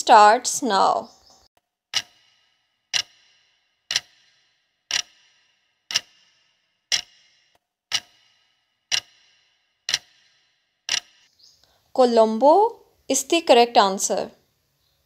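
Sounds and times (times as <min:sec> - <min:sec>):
countdown clock ticking: 0:01.9 - 0:11.3.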